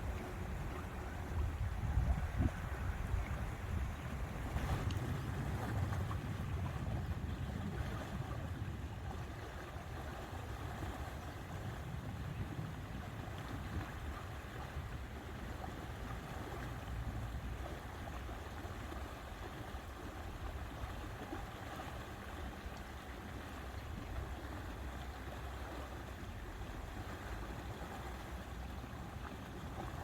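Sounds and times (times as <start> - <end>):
wind rumbling on microphone: 0.0 - 30.0.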